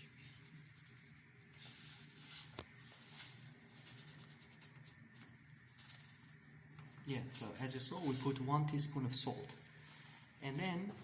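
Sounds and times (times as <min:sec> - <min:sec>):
soup boiling in a pot: 0:00.0 - 0:08.6.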